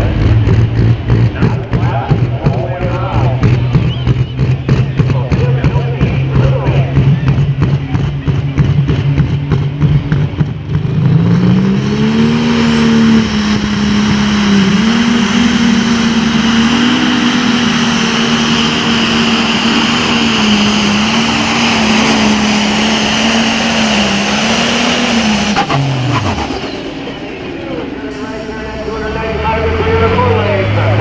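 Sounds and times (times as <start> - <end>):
diesel engine under full load: 0.0 - 31.0.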